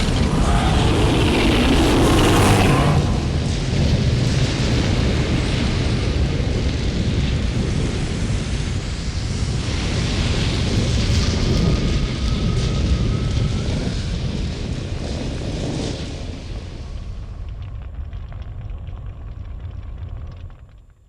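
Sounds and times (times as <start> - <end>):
loud low rumble with hiss: 0.0 - 8.1.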